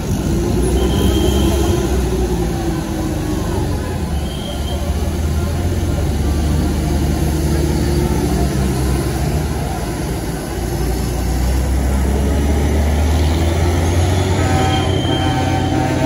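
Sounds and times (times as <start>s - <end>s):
diesel bus engine hum: 0.0s - 16.0s.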